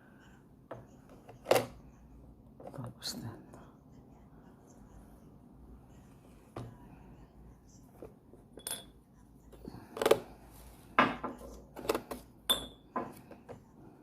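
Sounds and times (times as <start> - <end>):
coffee maker parts clinking: 8.6 - 9.0, 11.8 - 13.1.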